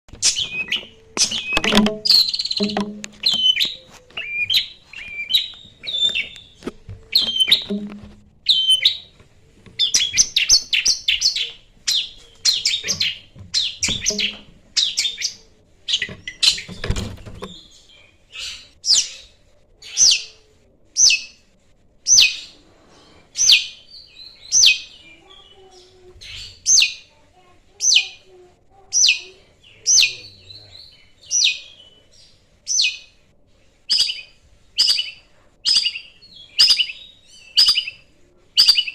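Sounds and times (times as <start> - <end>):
bird chirps and trills: 0.1 - 9.2, 9.8 - 20.3, 27.8 - 33.2, 33.9 - 38.9.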